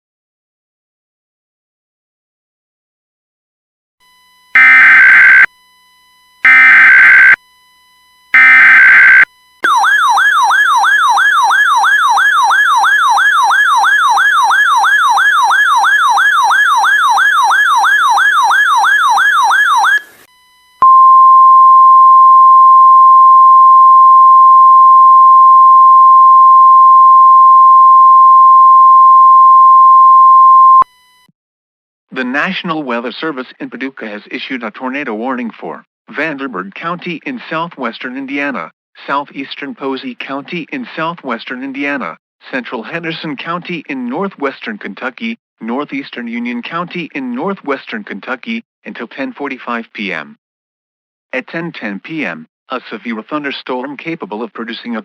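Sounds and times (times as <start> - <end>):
steady warning alarm tone: 4.0 - 20.8
electronic siren wailing: 4.5 - 5.5, 6.4 - 7.4, 8.3 - 20.2
data tone bursts: 4.6 - 5.5, 6.5 - 7.4, 8.4 - 9.8.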